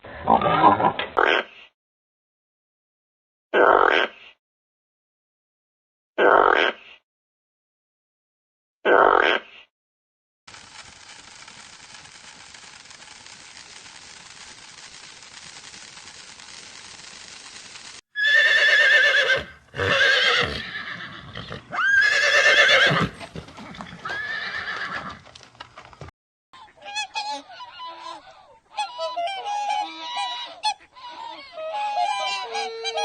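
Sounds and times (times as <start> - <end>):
horse whinnying: 18.2 - 25.2.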